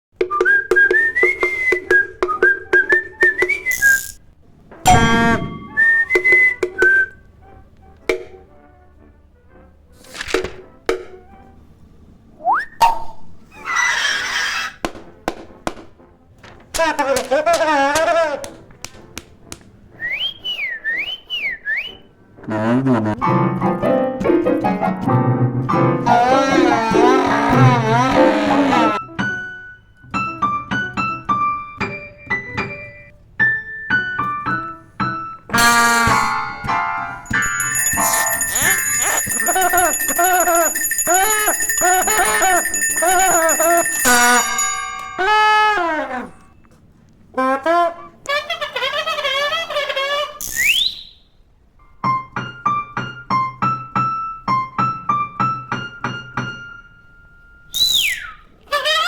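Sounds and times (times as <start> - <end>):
whistle glide: 0.4 - 4.2, 4.9 - 7.2, 37.3 - 45.6, 50.4 - 51.2, 57.7 - 58.4
piano notes: 4.8 - 6.4, 23.1 - 45.7, 51.9 - 57.5
wavering vibrato tone: 37.3 - 45.6.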